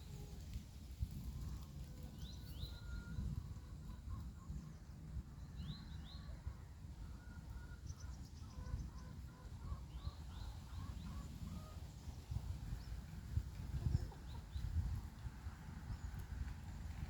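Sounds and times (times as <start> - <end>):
small birds chirping: 0.8 - 3.2, 7.2 - 15.0.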